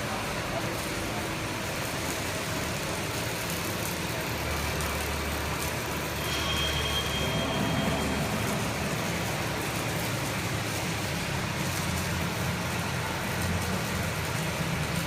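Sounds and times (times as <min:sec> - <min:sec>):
thin high whine: 0:06.0 - 0:10.0.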